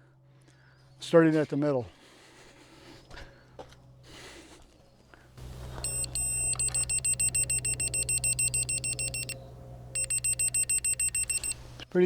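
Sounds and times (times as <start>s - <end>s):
low steady hum: 5.4s - 11.8s
rapid high electronic beeps: 5.8s - 9.4s, 10.0s - 11.6s.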